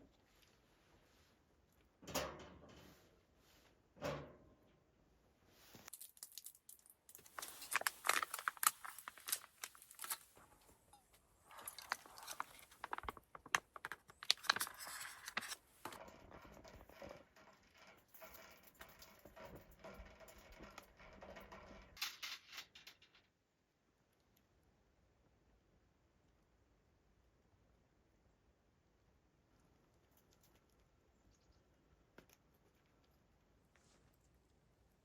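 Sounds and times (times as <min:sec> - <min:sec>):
crinkling and rustling material: 0:05.5 - 0:21.6.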